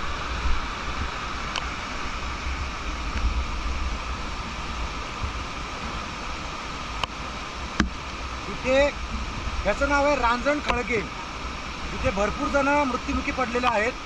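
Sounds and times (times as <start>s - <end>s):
low rumble: 0.0s - 6.0s
stream rushing over rock: 0.0s - 14.0s.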